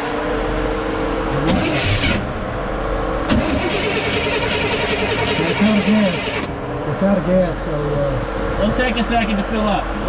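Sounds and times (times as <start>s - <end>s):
engine starter cranking: 1.5s - 2.5s, 3.3s - 6.5s.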